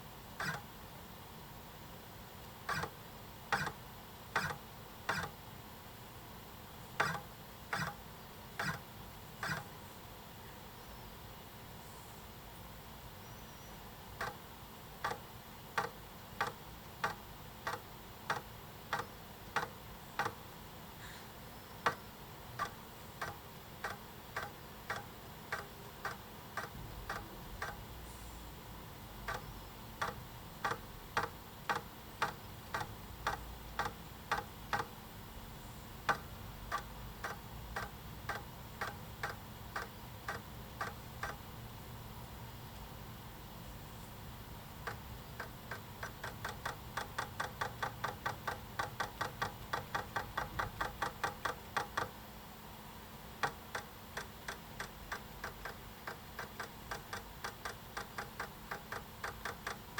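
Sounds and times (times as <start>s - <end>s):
stepper motor ticking: 0.4s - 0.7s, 2.7s - 5.4s, 7.0s - 8.0s, 8.6s - 8.8s, 9.4s - 9.7s, 21.8s - 27.8s, 29.2s - 34.9s, 36.1s - 41.5s, 44.8s - 52.2s, 53.4s - 59.9s.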